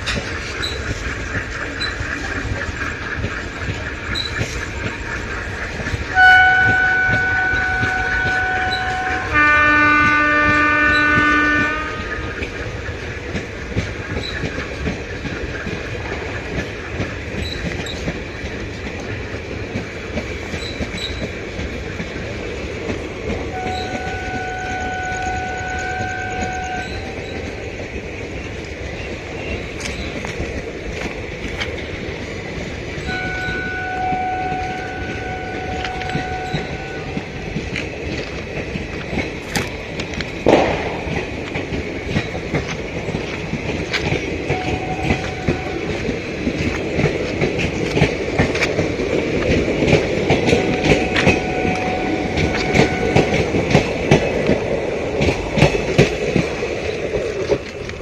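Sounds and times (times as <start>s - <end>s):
diesel locomotive rumbling: 0.0s - 58.0s
high locomotive horn: 6.1s - 12.3s, 23.5s - 27.2s, 33.0s - 37.3s, 44.5s - 46.1s, 50.4s - 53.8s
low full locomotive horn: 6.1s - 12.4s, 23.5s - 27.2s, 33.0s - 37.4s, 44.5s - 46.1s, 50.4s - 53.8s.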